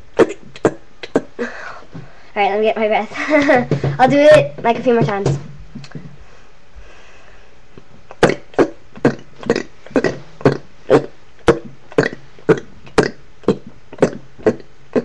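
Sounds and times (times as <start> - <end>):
hiccup-like burps: 0.1 - 1.4, 8.1 - 15.0.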